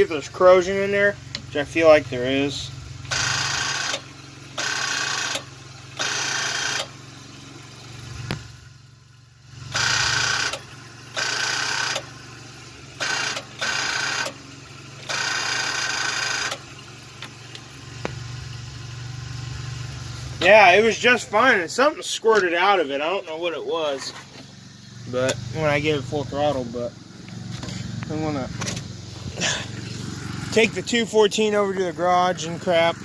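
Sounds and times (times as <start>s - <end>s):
starter solenoid chattering: 0.0s - 33.0s
steady low hum: 16.8s - 33.0s.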